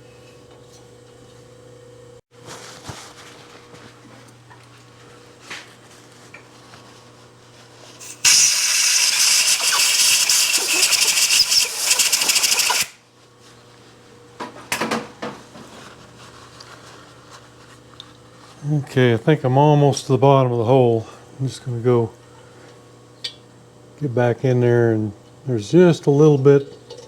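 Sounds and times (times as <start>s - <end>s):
compressed air hissing: 8.0s - 13.0s.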